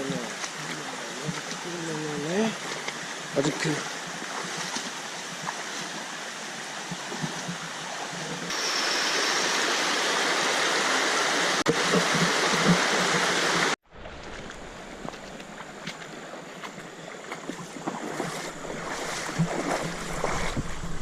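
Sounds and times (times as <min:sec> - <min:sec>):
river rushing over rocks: 0:08.0 - 0:13.8.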